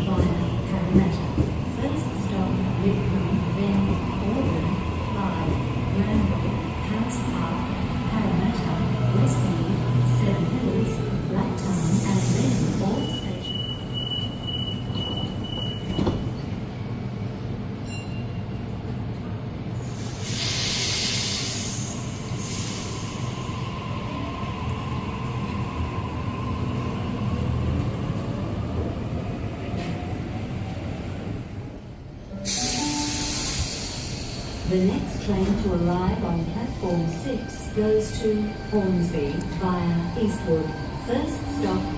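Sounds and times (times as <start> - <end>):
train wheels rumbling on rail: 0.0 - 17.9.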